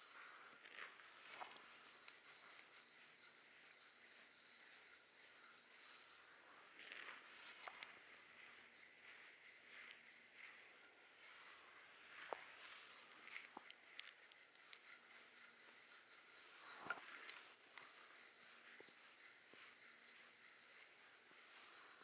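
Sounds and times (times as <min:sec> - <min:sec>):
soft rustling and scratching: 0:00.0 - 0:22.0.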